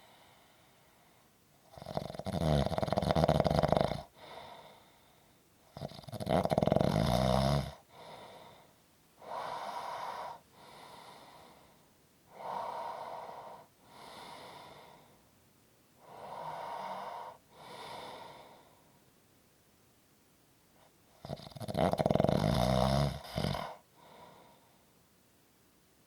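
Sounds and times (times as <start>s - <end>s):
fluttering snore: 1.7s - 4.1s, 5.8s - 7.8s, 21.2s - 23.8s
heavy breathing: 4.1s - 5.4s, 7.8s - 15.2s, 16.0s - 19.0s, 23.2s - 25.0s.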